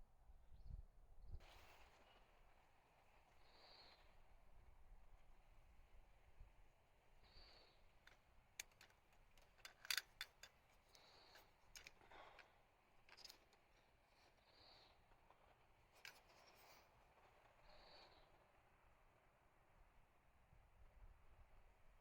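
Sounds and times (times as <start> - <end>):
sharp handling clicks: 8.0 - 13.7.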